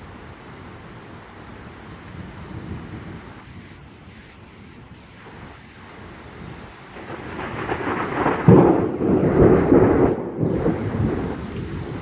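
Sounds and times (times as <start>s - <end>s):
thunder rumbling and cracking: 6.4s - 12.0s.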